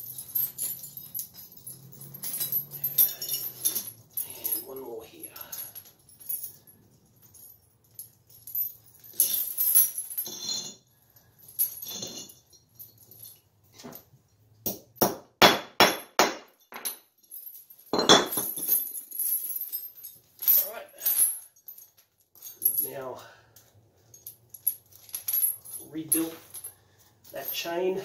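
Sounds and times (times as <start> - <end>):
chain links clinking and jangling: 0.0 - 15.2, 15.8 - 28.0
sharp metal knocks: 14.6 - 16.9.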